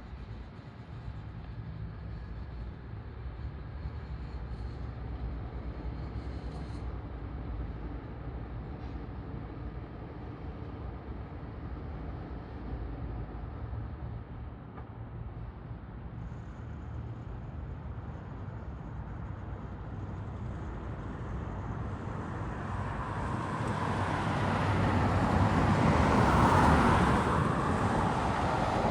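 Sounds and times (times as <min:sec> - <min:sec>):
road noise: 0:17.4 - 0:28.9.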